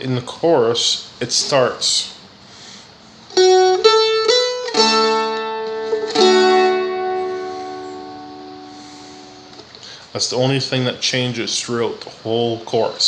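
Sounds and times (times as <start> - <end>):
dulcimer being picked and strummed: 3.4 - 9.7.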